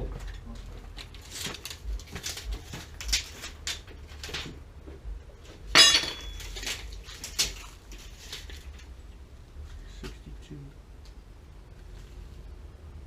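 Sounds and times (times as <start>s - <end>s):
metal clinking and knocking: 5.7s - 7.0s
ringing metal clank: 5.8s - 6.5s.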